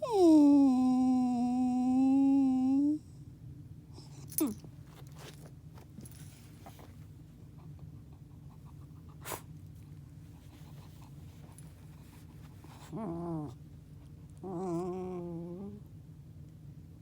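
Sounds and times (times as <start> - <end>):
dog whining: 0.0 - 3.0, 4.0 - 4.7, 12.7 - 13.6, 14.4 - 15.9.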